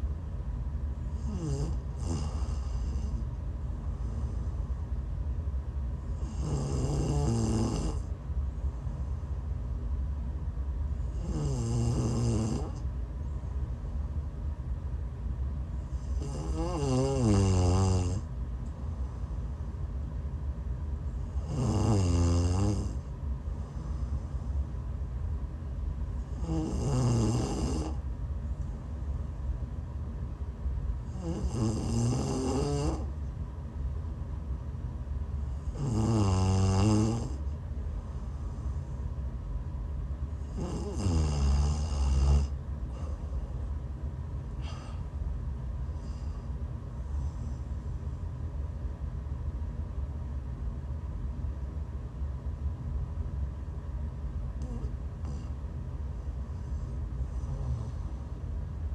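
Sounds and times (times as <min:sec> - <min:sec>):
woman snoring: 0:01.2 - 0:03.3, 0:06.2 - 0:08.1, 0:11.0 - 0:12.8, 0:15.9 - 0:18.3, 0:21.3 - 0:23.0, 0:26.3 - 0:28.0, 0:31.1 - 0:33.1, 0:35.5 - 0:37.4, 0:40.4 - 0:43.2, 0:44.6 - 0:45.0, 0:54.6 - 0:55.6, 0:57.3 - 0:58.2.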